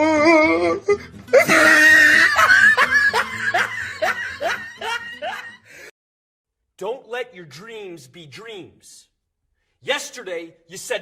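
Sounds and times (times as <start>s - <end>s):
loud laughter: 1.3s - 5.7s.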